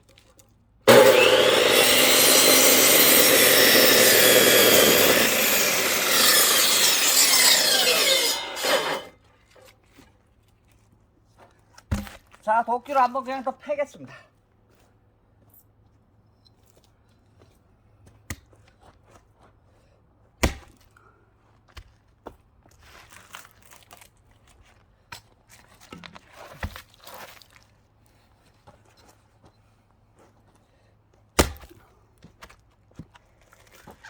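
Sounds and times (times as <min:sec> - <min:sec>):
axe chopping wood: 0:20.4 - 0:20.8, 0:31.4 - 0:31.8.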